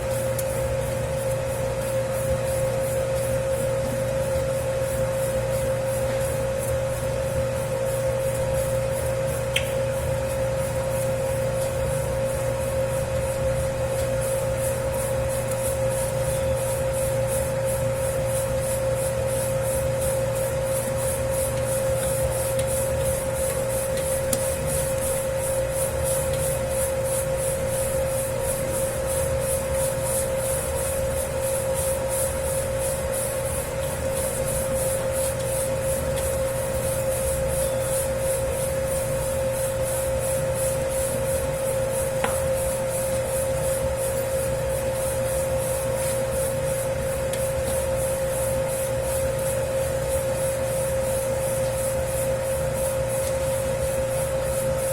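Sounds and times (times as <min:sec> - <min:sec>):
dough mixer motor hum: 0:00.0 - 0:54.9
rhythmic swishing of dough: 0:00.0 - 0:54.9.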